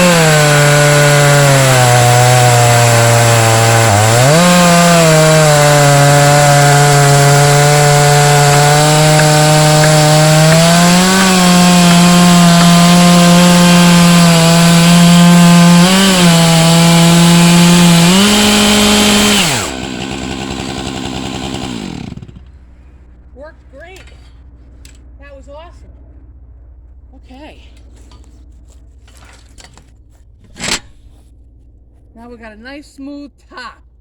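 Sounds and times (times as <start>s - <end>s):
chainsaw cutting log: 0.0s - 22.6s.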